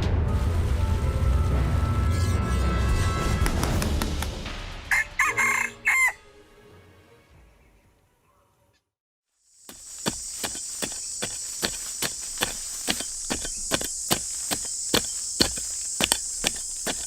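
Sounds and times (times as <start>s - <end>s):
steady high-pitched hiss: 9.5s - 17.0s
sharp repeating knocks: 9.7s - 17.0s.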